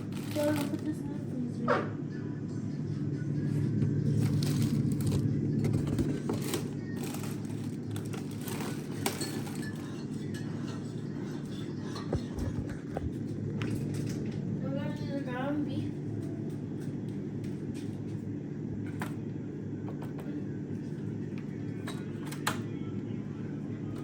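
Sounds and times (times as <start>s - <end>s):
frozen food packages rustling: 0.0s - 1.0s, 4.0s - 10.0s
steady low hum: 0.0s - 24.0s.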